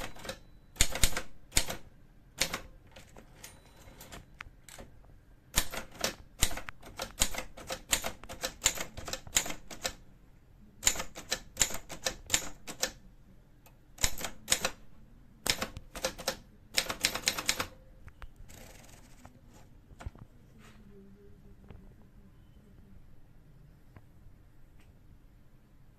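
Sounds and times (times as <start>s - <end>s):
manual typewriter typing: 0.0s - 4.9s, 5.6s - 10.0s, 10.8s - 13.0s, 14.0s - 14.8s, 15.4s - 17.8s, 18.5s - 19.3s.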